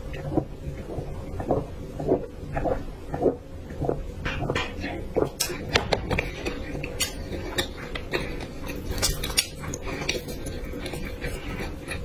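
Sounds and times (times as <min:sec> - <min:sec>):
utensils clicking and scraping on dish: 0:04.3 - 0:12.0.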